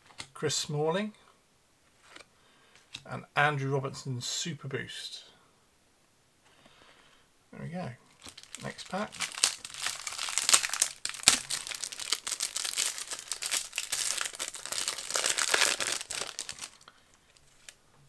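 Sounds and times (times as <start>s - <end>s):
plastic wrapper tearing and crinkling: 8.2s - 17.8s.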